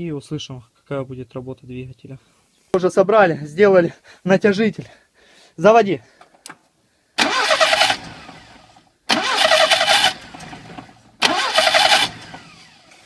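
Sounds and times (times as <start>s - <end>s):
car engine cranking: 7.2s - 13.0s.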